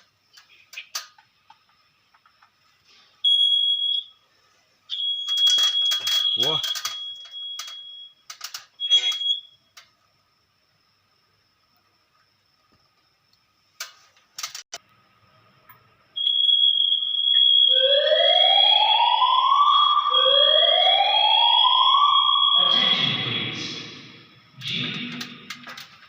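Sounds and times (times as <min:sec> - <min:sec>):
high-pitched alarm tone: 0:04.9 - 0:08.2, 0:08.8 - 0:09.5, 0:16.2 - 0:25.5.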